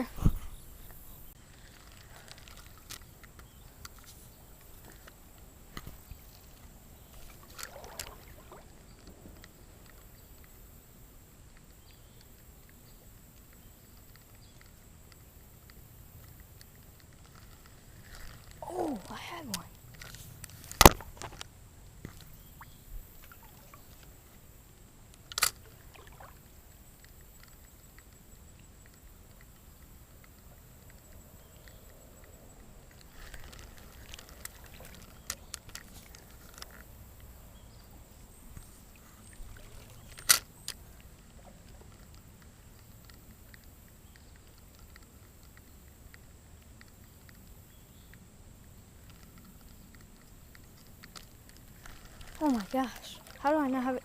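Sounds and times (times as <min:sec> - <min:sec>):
water trickling: 0:00.5 - 0:10.8, 0:22.0 - 0:47.3, 0:50.2 - 0:54.0.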